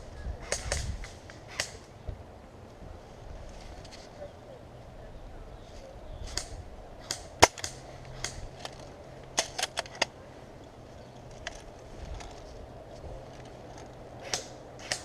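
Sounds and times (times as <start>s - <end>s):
airsoft gun shots: 6.3s - 8.4s.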